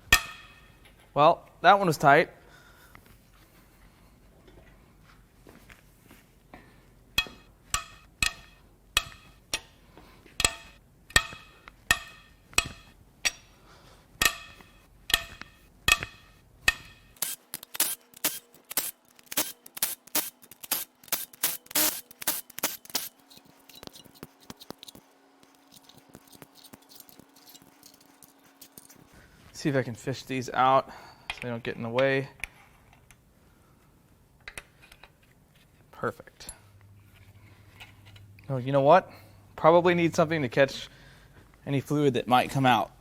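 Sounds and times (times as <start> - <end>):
ratchet clicking: 16.7 - 29.1.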